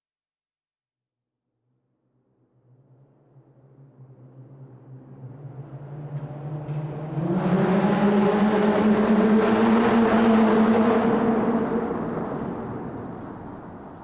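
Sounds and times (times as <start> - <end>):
car engine driving through tunnel: 4.2 - 14.0.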